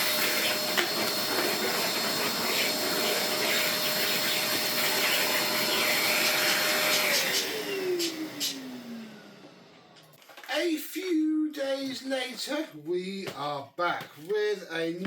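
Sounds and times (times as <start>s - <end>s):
vacuum cleaner running: 0.0s - 10.1s.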